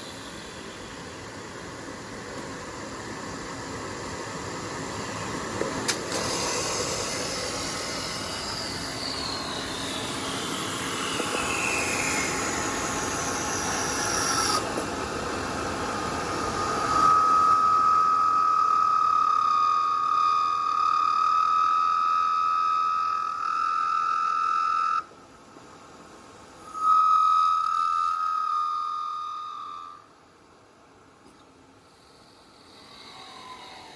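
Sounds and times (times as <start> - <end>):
high-pitched machine whine: 0.0 - 30.6, 31.8 - 33.9
wood lathe cutting: 16.2 - 24.2, 26.7 - 29.9.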